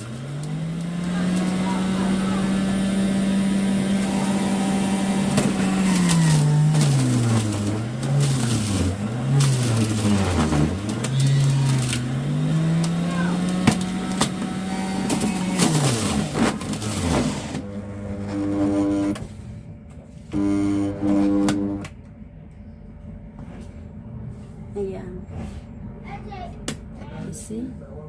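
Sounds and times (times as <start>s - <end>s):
juicer motor humming: 0.0s - 19.3s, 20.3s - 22.0s.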